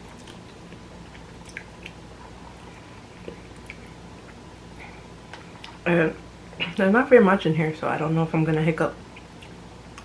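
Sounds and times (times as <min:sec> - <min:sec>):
person chewing noodles: 0:00.0 - 0:05.8
low background hum: 0:00.0 - 0:10.0
wet mouth clicks: 0:00.2 - 0:02.0.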